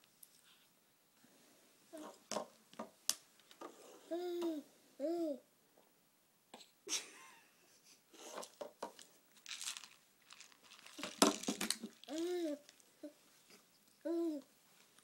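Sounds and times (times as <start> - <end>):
cereal crunching while chewed: 9.4 - 12.9.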